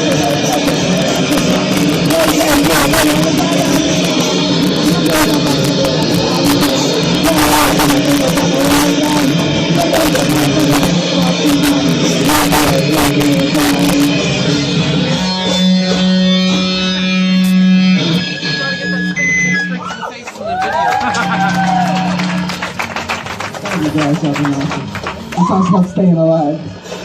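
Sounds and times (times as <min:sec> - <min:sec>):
guitar chord ringing: 0:00.0 - 0:20.0
live rock band playing: 0:00.0 - 0:25.8.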